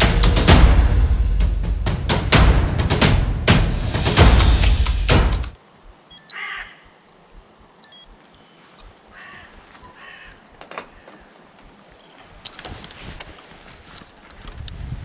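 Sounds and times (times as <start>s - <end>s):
high chirps: 6.0s - 6.7s, 7.8s - 8.7s
crow cawing: 6.3s - 7.0s, 9.1s - 11.3s.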